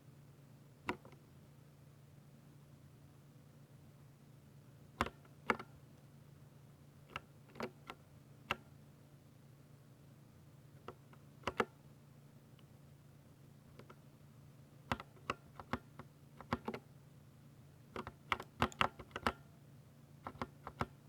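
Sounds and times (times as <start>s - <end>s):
faint low hum: 0.0s - 21.0s
mechanical keyboard keystrokes: 7.1s - 8.6s, 14.9s - 16.8s, 18.0s - 19.4s, 20.2s - 21.0s.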